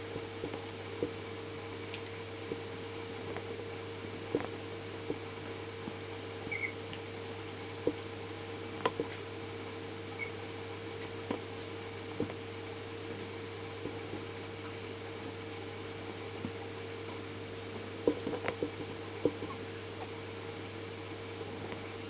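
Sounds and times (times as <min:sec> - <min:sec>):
electrical hum: 0:00.0 - 0:22.0
puppy squeaks: 0:06.5 - 0:06.8, 0:10.2 - 0:10.4.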